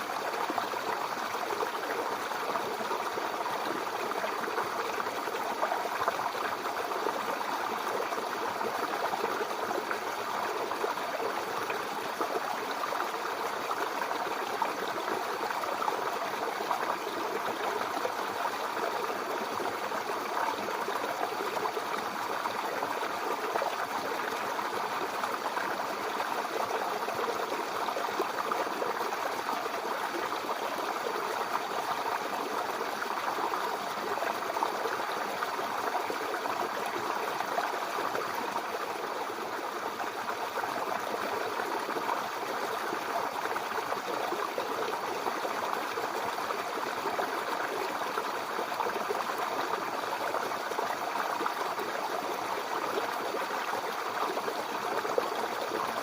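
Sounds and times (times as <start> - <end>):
brook babbling over stones: 0.0 - 56.0.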